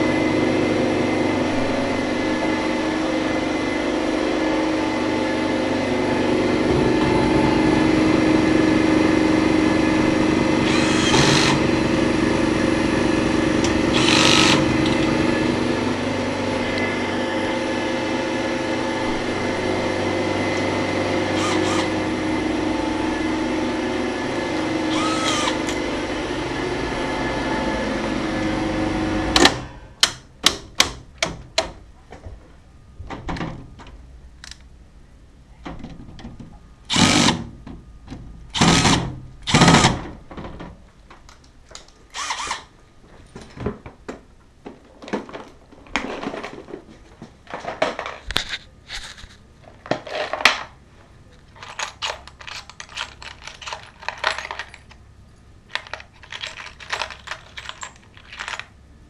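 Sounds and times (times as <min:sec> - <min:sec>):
vacuum cleaner running: 0:00.0 - 0:29.7
knocks and clatters: 0:35.6 - 0:36.6, 0:51.4 - 0:55.0, 0:55.7 - 0:58.8.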